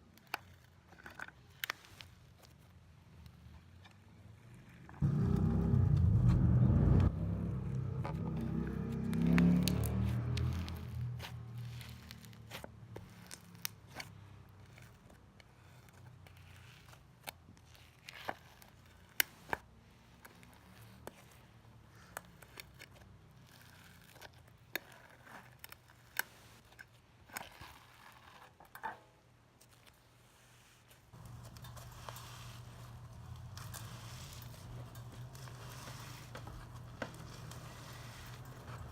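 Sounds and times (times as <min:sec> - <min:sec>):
low steady hum: 0:05.0 - 0:12.3.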